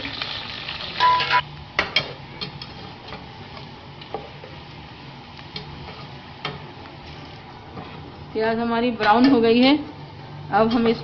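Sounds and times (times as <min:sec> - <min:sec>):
onions sizzling in hot oil: 0:00.0 - 0:08.4.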